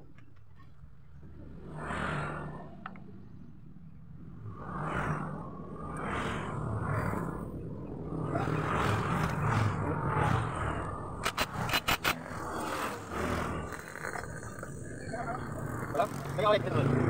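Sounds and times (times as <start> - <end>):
sharp clicks: 11.2 - 12.4
scooter engine revving: 11.6 - 17.0.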